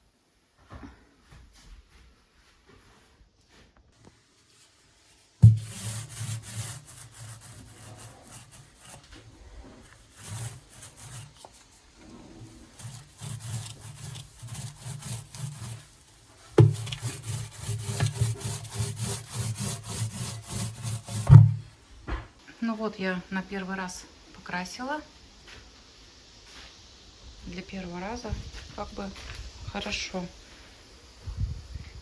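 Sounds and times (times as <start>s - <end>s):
paint roller rubbing on cabinet: 4.2s - 21.7s.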